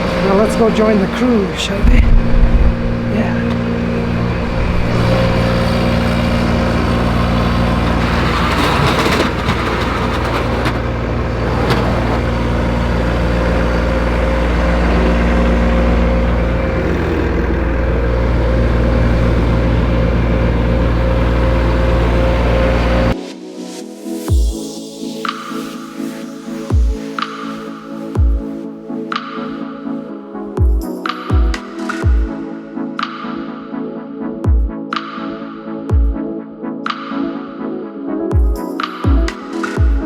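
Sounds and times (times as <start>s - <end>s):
vehicle engine running: 0.0s - 23.2s
rushing noise: 1.4s - 23.2s.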